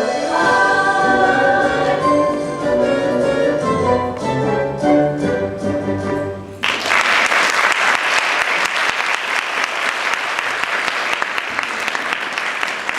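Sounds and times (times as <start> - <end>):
held music chord: 0.0 - 6.6
audience applauding: 6.6 - 12.9.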